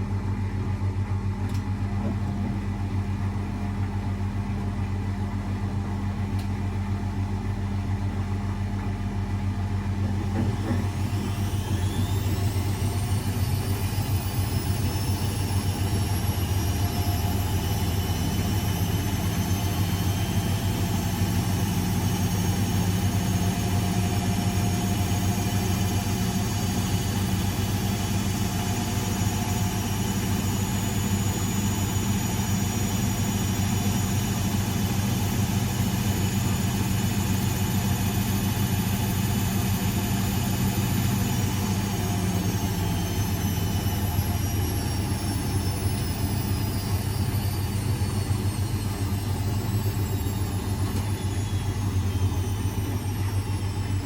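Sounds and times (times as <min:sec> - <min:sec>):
washing machine running: 0:00.0 - 0:54.0
high whining tones: 0:11.0 - 0:54.0.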